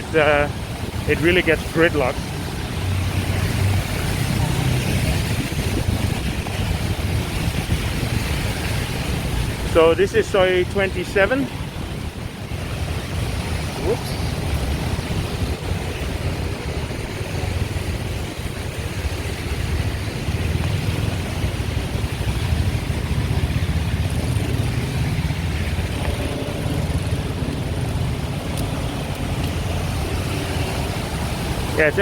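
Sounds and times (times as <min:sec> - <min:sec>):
car engines in slow traffic: 0:00.0 - 0:32.0.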